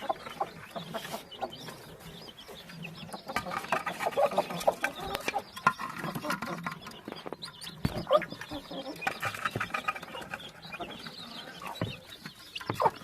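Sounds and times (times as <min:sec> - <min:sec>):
chicks peeping: 0:00.0 - 0:13.0
hen clucking softly: 0:00.0 - 0:13.0.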